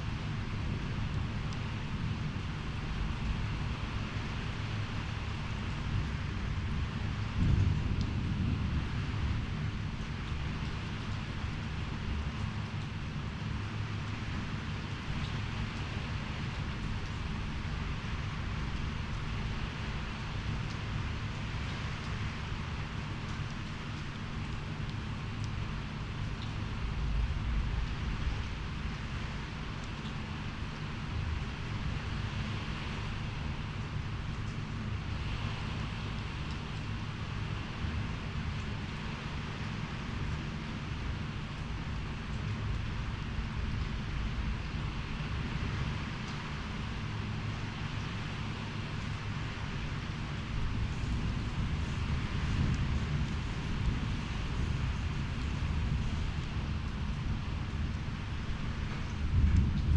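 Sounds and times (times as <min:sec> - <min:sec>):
rain hiss: 0:00.0 - 0:59.9
storm wind buffeting microphone: 0:00.1 - 0:34.2, 0:48.5 - 0:59.9.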